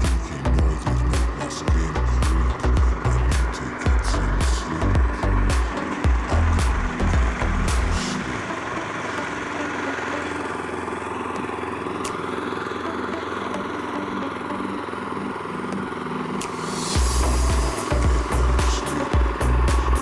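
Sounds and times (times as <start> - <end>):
loud low beat: 0.0 - 8.0, 17.0 - 20.0
small tractor engine under load: 0.0 - 20.0.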